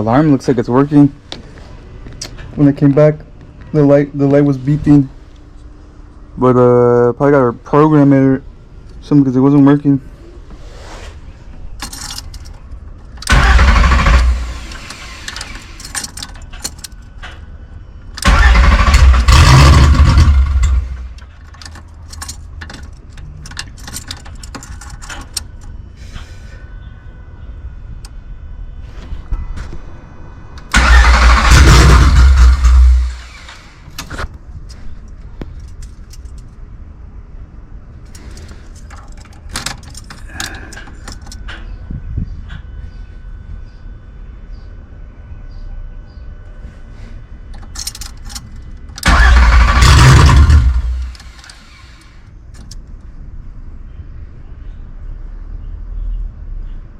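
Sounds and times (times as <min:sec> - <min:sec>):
engine cranking on starter: 0:13.2 - 0:16.6, 0:18.2 - 0:22.2, 0:30.6 - 0:34.2, 0:49.0 - 0:52.3.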